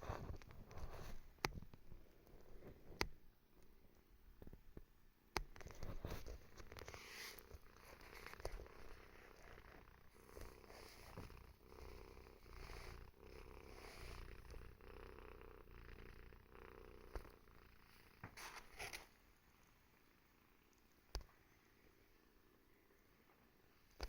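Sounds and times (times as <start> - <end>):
cat purring: 0.0 - 4.5, 5.5 - 24.0.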